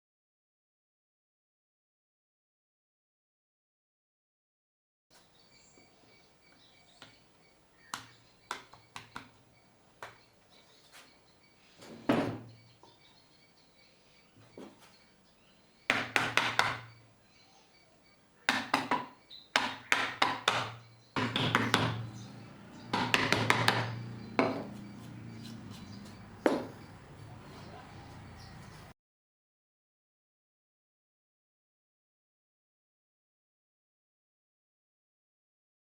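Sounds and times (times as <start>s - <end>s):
hand tools knocking on wood: 15.9s - 17.0s, 18.5s - 27.2s.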